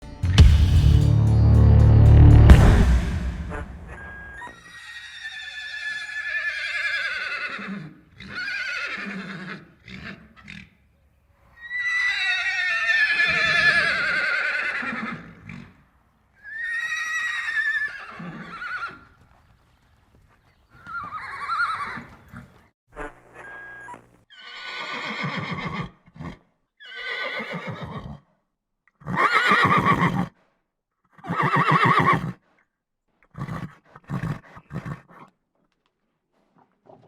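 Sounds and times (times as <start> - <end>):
horse whinnying: 4.5 - 10.2, 11.6 - 15.7, 16.4 - 19.1, 20.8 - 22.5, 23.4 - 28.2, 29.0 - 30.3, 31.2 - 32.4.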